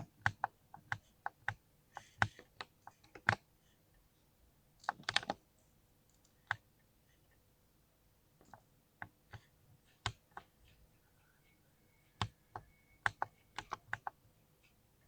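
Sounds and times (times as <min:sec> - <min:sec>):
mechanical keyboard typing: 0:04.8 - 0:05.4, 0:13.0 - 0:14.2.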